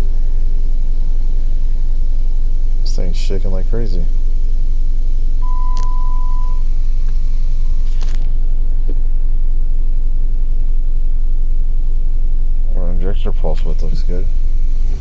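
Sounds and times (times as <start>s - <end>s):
car engine idling and misfiring: 0.0s - 15.0s
beep: 5.4s - 6.7s.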